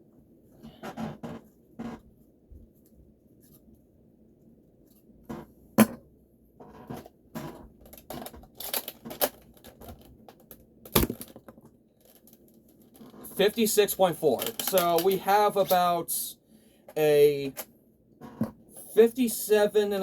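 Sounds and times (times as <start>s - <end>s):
plastic toy blaster clicks and clacks: 7.9s - 11.4s, 12.0s - 16.0s.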